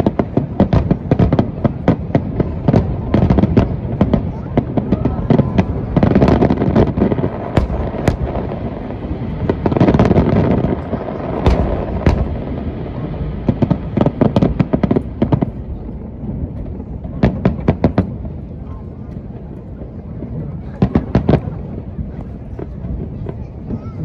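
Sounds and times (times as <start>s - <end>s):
continuous rumble: 0.0s - 24.0s
crackling fireworks reports: 0.0s - 24.0s
fireworks shells bursting: 6.7s - 15.4s.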